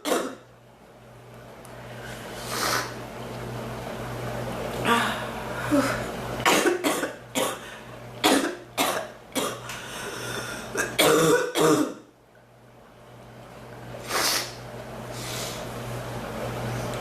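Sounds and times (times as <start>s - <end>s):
woman coughing: 0.0s - 0.4s, 5.7s - 7.6s, 8.2s - 9.6s, 10.8s - 12.1s.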